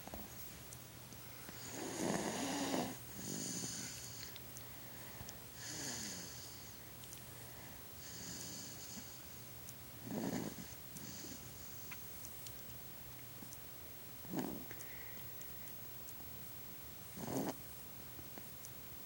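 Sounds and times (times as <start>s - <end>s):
person snoring: 1.6s - 4.2s, 5.6s - 6.6s, 17.2s - 17.6s.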